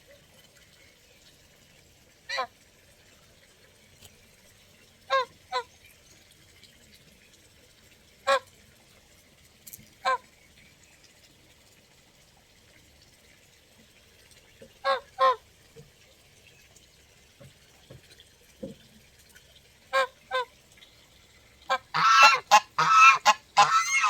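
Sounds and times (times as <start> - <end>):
goose honking: 21.7 - 24.0.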